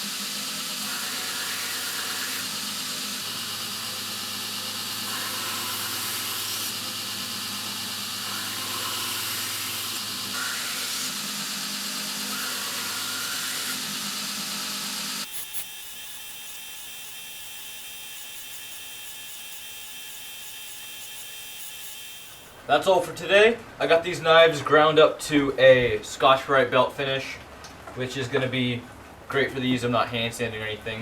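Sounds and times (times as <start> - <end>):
belt grinder humming and hissing: 0.0 - 22.6.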